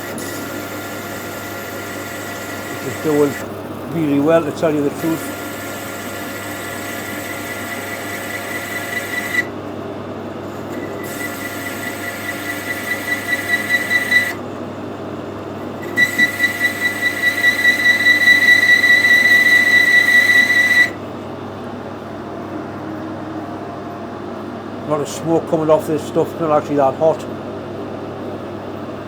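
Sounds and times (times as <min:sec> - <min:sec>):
lathe tool squealing: 0:00.0 - 0:09.5, 0:10.6 - 0:14.4, 0:15.8 - 0:21.0
metal lathe running: 0:00.0 - 0:09.7, 0:10.4 - 0:14.8, 0:15.6 - 0:21.1.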